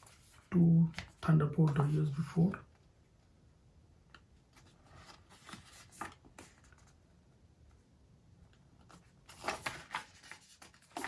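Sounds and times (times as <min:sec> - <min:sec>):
paper rustling and tapping: 0:08.8 - 0:11.0.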